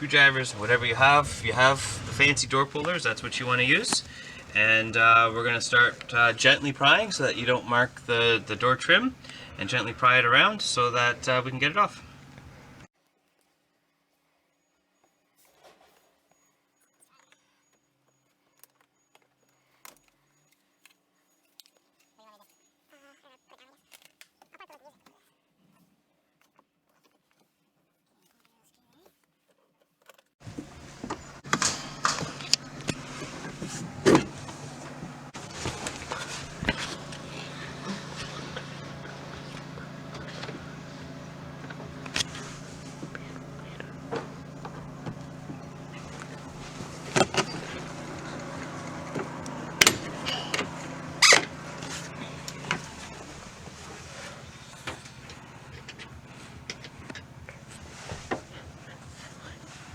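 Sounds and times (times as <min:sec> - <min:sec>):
steady low hum: 0:00.0 - 0:12.9, 0:30.4 - 0:59.9.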